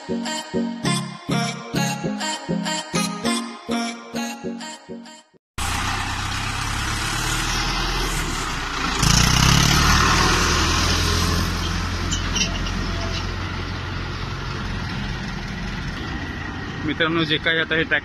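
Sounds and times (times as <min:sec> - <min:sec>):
tractor engine running: 0:05.6 - 0:18.0.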